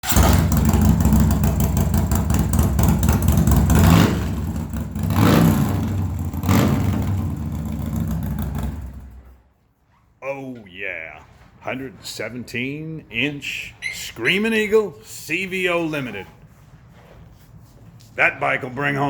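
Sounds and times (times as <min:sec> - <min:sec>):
motorcycle engine rumble: 0:00.0 - 0:09.4.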